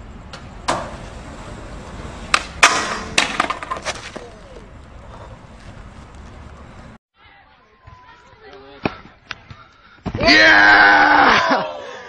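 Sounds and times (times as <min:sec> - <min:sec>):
sharp knocks and clattering: 0:02.3 - 0:04.2.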